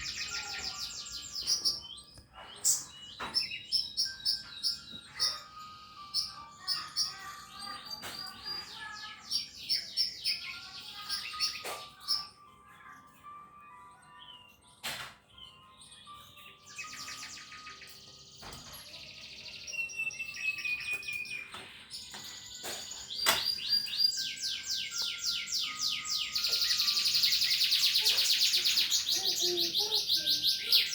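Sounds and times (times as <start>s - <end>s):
birds singing trills: 0.0s - 30.9s.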